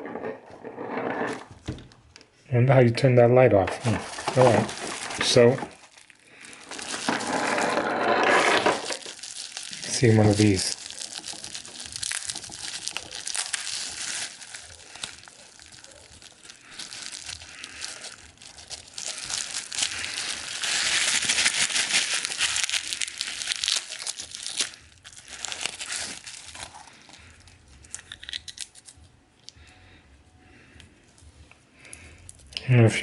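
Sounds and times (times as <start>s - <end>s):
packaging crinkling and rustling: 3.4s - 29.6s.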